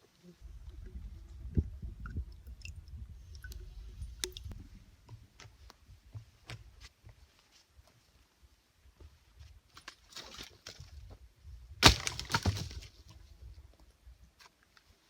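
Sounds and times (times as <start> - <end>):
low rumble: 0.4 - 5.1
twigs snapping underfoot: 11.8 - 13.0.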